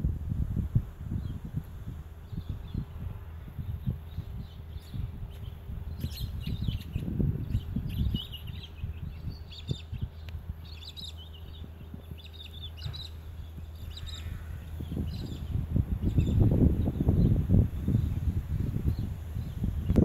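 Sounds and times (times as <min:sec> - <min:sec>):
small birds chirping: 0:01.1 - 0:20.0.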